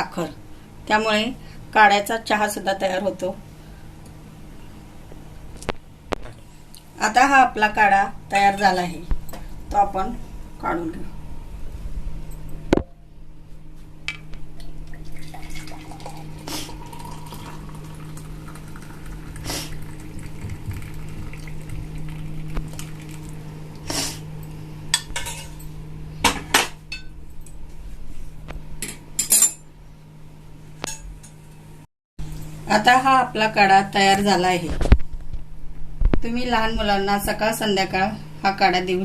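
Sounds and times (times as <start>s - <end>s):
steady low hum: 0.0s - 39.0s
liquid pouring: 14.7s - 23.4s.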